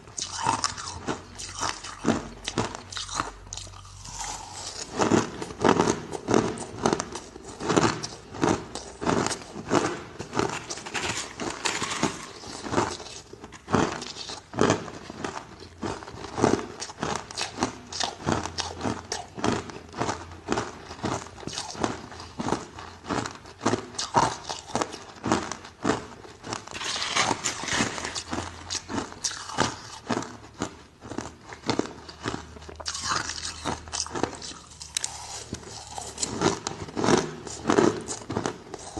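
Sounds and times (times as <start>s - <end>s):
ice being chewed: 0.0s - 38.9s.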